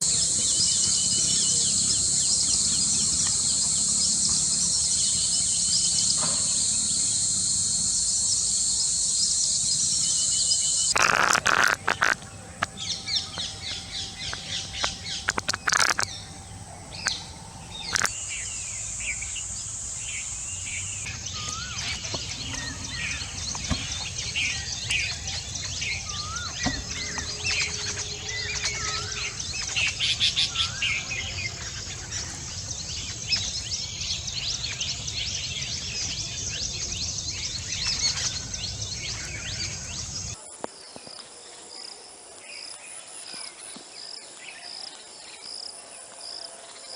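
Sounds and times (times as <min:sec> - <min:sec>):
high-pitched insect drone: 0:00.0 - 0:40.4
small birds chirping: 0:00.0 - 0:40.4
sharp clicks: 0:10.9 - 0:16.3, 0:16.9 - 0:18.1.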